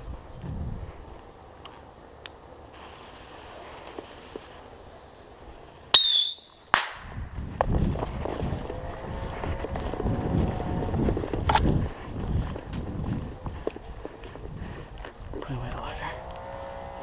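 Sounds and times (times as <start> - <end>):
firework crack: 2.7 - 7.3
firework whistle: 5.9 - 6.7.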